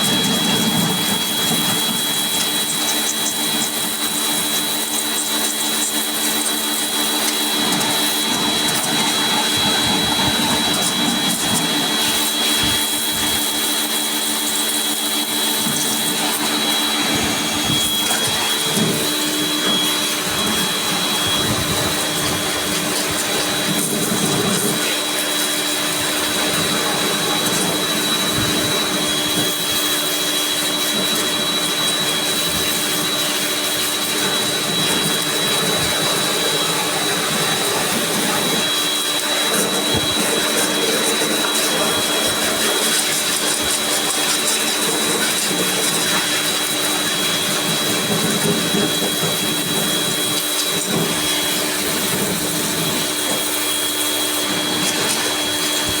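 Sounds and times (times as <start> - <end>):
cleaning machine whining: 0.0 - 56.0.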